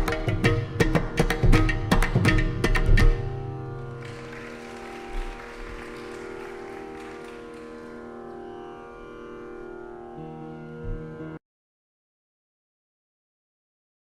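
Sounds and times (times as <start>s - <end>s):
veena strings ringing: 0.0s - 11.4s.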